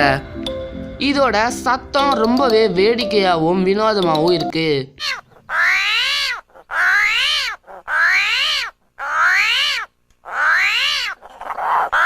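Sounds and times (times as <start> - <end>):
armadillo squealing calls: 5.0 - 12.0.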